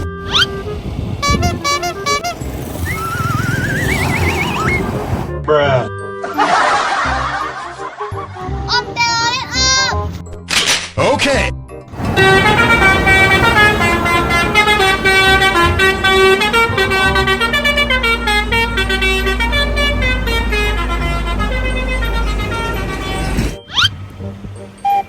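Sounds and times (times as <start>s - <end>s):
bus engine hum: 0.0s - 5.4s, 11.9s - 25.0s
bus musical horn tune: 0.0s - 5.4s, 11.9s - 25.0s.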